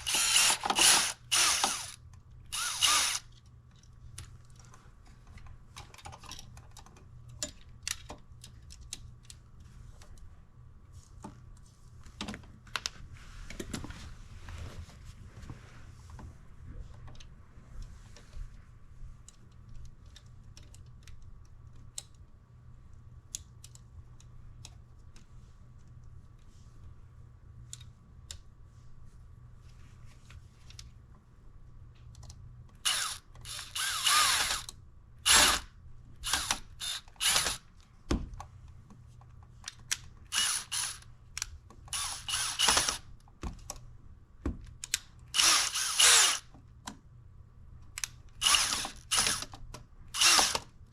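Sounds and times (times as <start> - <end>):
screwdriver ratcheting: 0.0 - 3.4, 32.8 - 37.6, 40.3 - 43.0, 44.8 - 46.5, 48.0 - 49.6, 50.2 - 50.7.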